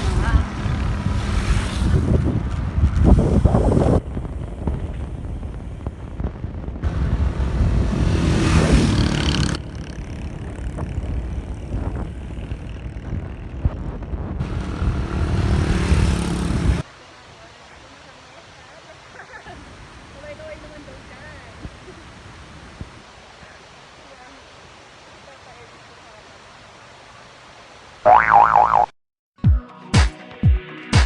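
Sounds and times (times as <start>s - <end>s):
vehicle running: 0.0s - 4.6s, 6.8s - 16.8s
wind rushing over microphone: 0.0s - 16.9s, 19.6s - 23.7s.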